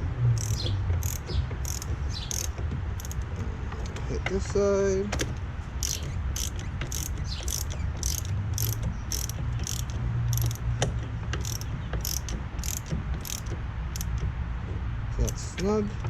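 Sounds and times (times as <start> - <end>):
ratchet wrench clicking: 0.3 - 3.3, 5.2 - 14.3, 15.2 - 15.7.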